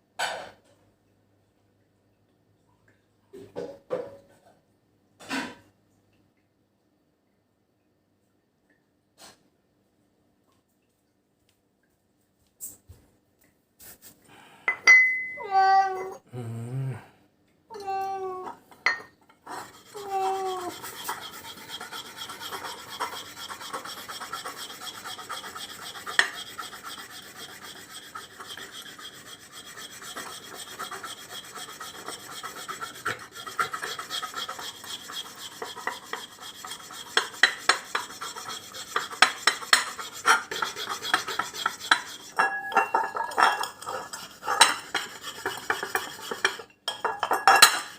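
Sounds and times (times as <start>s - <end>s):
rubbing and scraping: 19.4s - 47.9s.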